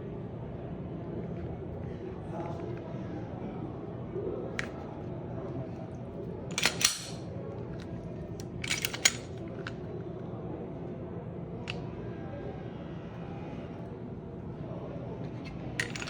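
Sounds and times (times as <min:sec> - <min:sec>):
pistol metallic clicks: 0:06.5 - 0:07.2.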